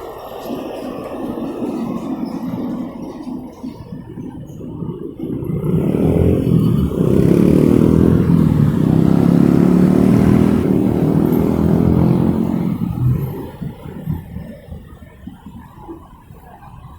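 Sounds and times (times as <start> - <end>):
motor vehicle passing: 5.2 - 14.4.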